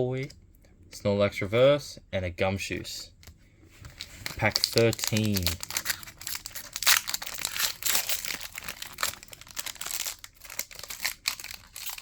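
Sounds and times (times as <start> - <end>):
foil wrapper tearing and crinkling: 4.0 - 12.0.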